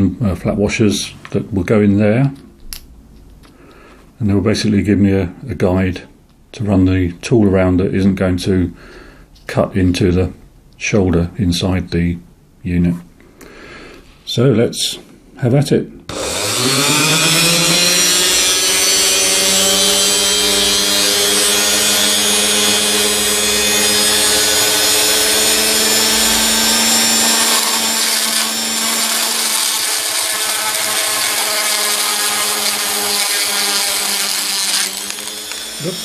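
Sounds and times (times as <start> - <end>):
rotary tool grinding plastic: 16.1 - 36.0.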